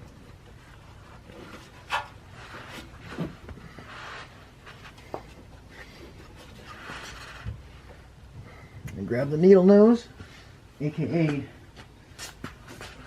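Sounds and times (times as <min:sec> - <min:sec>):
scraping and rubbing: 0:00.6 - 0:07.8.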